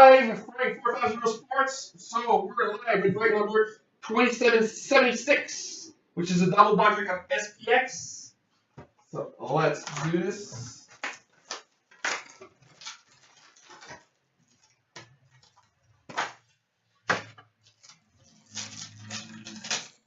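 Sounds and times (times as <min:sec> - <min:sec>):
foil packs rustling: 0:09.9 - 0:16.2, 0:17.6 - 0:20.0
packaging crinkling: 0:10.8 - 0:16.2, 0:17.6 - 0:20.0.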